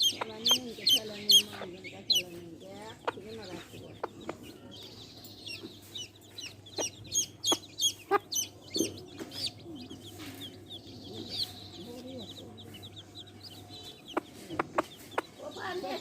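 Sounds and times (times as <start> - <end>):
baby chicks peeping: 0.0 - 16.0
hens clucking: 0.0 - 16.0.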